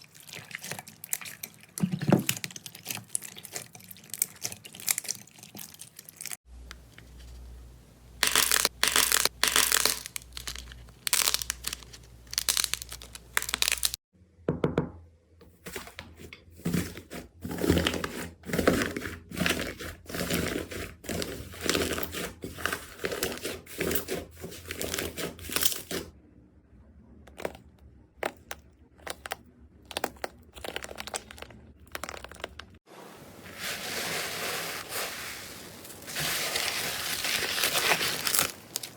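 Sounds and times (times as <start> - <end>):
slime crackling and popping: 8.2 - 14.0.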